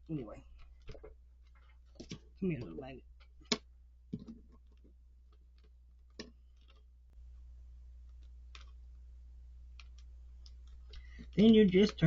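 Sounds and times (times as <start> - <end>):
low steady hum: 0.0 - 12.0
small parts clicking: 8.0 - 8.8, 9.7 - 12.0.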